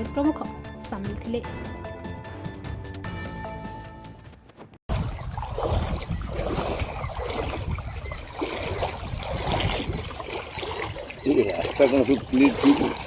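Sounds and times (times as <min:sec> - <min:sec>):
background music: 0:00.0 - 0:04.8
floodwater rushing: 0:04.9 - 0:13.0
wind rumbling on microphone: 0:04.9 - 0:13.0.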